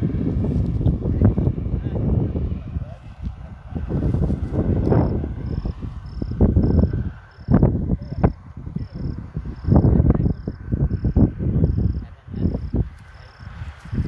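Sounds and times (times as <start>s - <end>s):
low rumbling: 0.0s - 14.0s
insect chirping: 4.1s - 14.0s.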